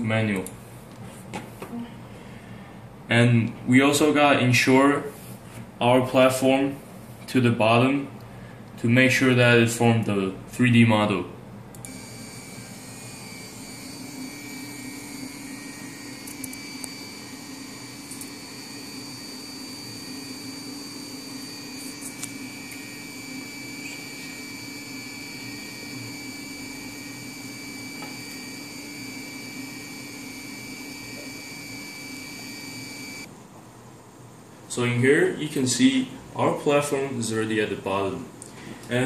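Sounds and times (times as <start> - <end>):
motor whining: 11.8 - 33.3.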